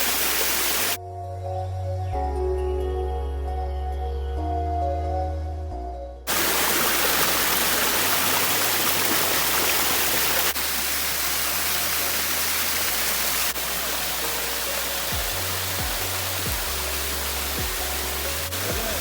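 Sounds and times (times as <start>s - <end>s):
waterfall rushing: 0.0s - 1.0s, 6.3s - 19.0s.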